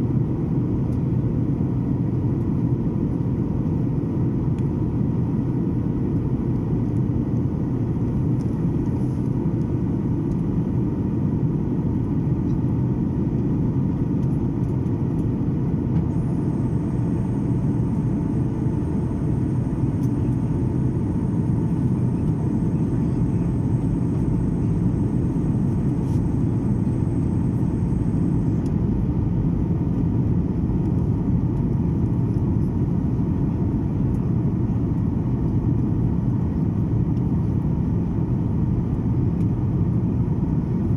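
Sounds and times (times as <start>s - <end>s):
airliner cabin drone: 0.0s - 40.9s
high steady whine: 16.0s - 29.4s.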